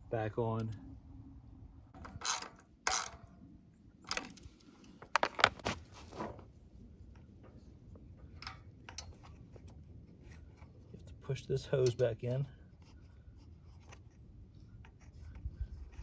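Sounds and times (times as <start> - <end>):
plastic parts clicking and rattling: 2.0 - 3.3, 4.0 - 5.8.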